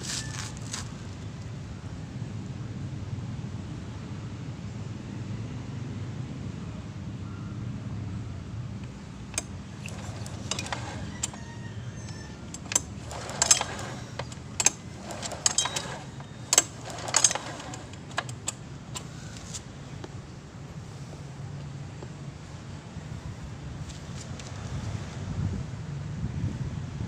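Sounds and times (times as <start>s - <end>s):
metallic clicks and rattles: 9.3s - 11.4s, 12.0s - 19.6s.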